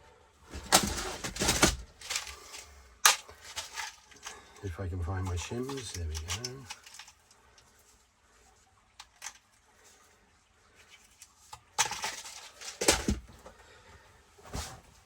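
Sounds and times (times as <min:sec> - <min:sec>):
rustling clatter: 0:00.5 - 0:04.6, 0:05.2 - 0:07.8, 0:10.7 - 0:13.4
faint clicks of small parts: 0:00.7 - 0:13.2.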